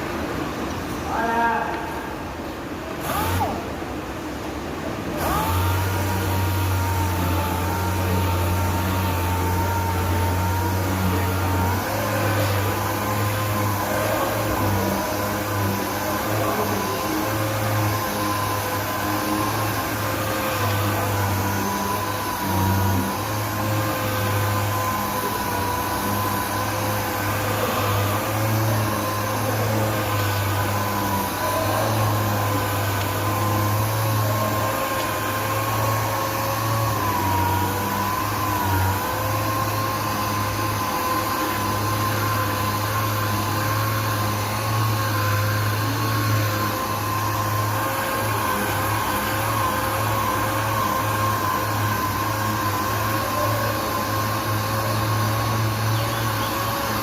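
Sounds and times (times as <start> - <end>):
machine sander whine: 0.0 - 57.0.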